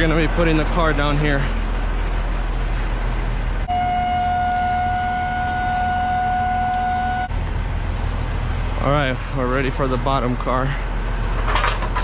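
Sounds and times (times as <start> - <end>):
truck engine idling: 0.0 - 12.0
hydraulic whine: 3.5 - 8.8.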